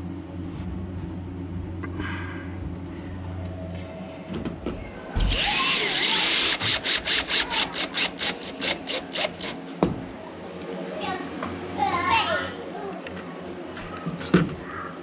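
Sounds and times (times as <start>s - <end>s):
power tool running: 5.2s - 9.6s.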